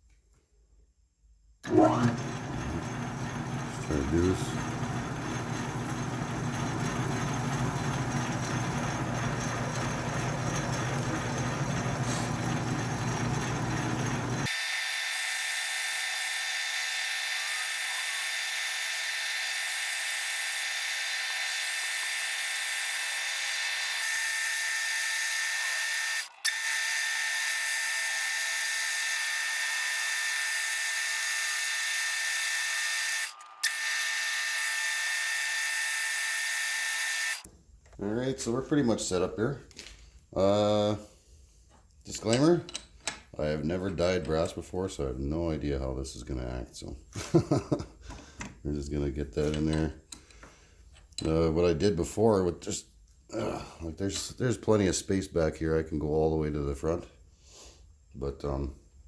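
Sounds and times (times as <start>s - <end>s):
metal lathe drilling: 1.7s - 37.4s.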